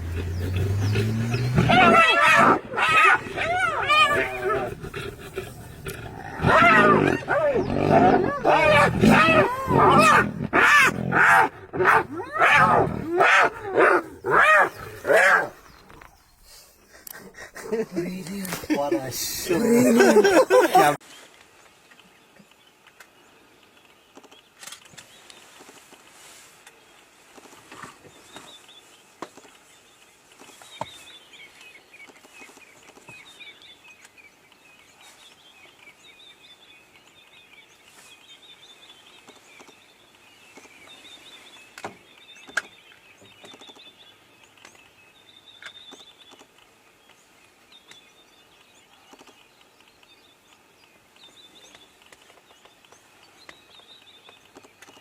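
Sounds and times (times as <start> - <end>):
small birds chirping: 0.0 - 20.9.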